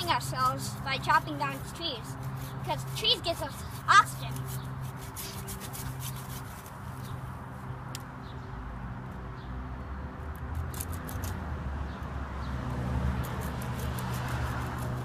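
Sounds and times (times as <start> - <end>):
hand saw cutting wood: 0.0 - 6.8, 10.5 - 11.4, 13.0 - 15.0.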